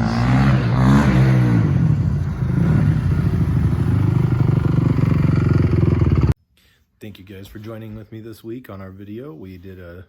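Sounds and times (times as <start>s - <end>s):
motorcycle engine revving and idling: 0.0s - 6.4s.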